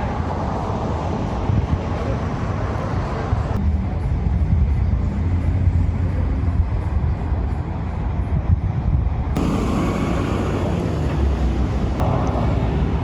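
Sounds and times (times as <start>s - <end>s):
faint hum: 9.4s - 12.1s
low vehicle rumble: 9.4s - 13.0s.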